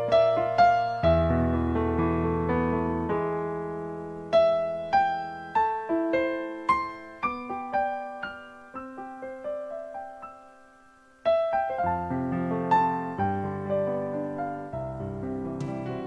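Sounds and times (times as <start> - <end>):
slow piano melody: 0.0 - 16.0.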